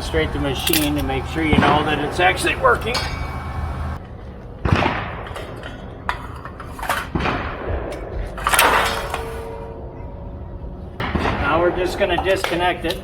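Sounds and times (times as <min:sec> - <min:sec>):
low motor hum: 0:00.0 - 0:04.0
mechanical bangs and clunks: 0:00.0 - 0:04.0.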